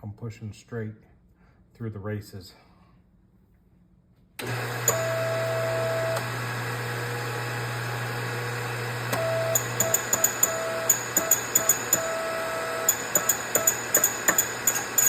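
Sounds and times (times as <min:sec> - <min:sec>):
mid-pitched whine: 0:04.4 - 0:15.0
shop press motor hum: 0:04.4 - 0:15.0
sharp clicks: 0:12.9 - 0:15.0.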